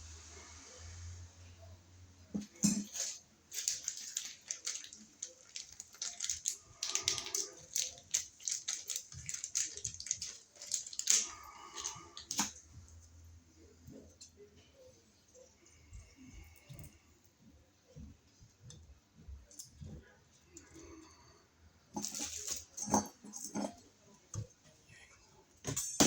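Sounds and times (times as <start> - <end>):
small hard objects clicking: 3.5 - 12.5.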